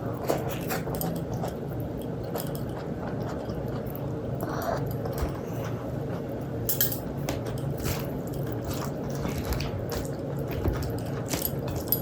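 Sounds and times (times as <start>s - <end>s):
wet squishy eating: 0.0s - 5.8s.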